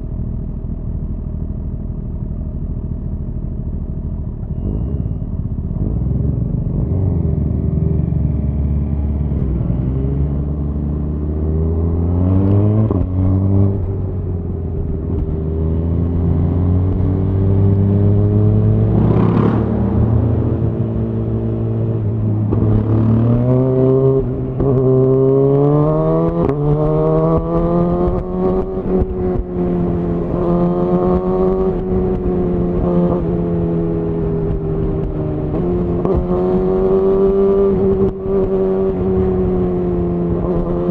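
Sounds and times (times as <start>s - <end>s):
motorcycle engine revving: 4.5s - 40.9s.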